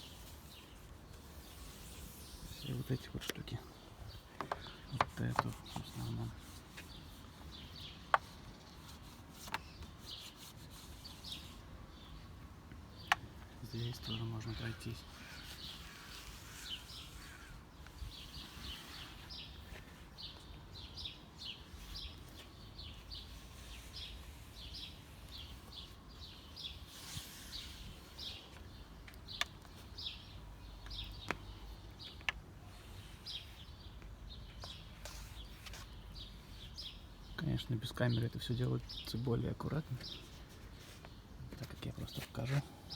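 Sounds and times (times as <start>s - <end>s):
bird chirping: 12.9s - 42.9s.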